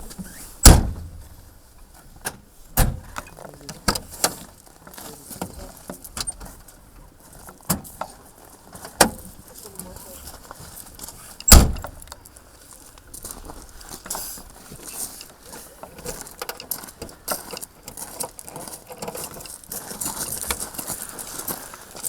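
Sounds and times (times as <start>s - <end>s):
sharp thump: 0.6s - 1.2s
small crackles and rustling: 3.3s - 11.4s, 12.0s - 22.0s.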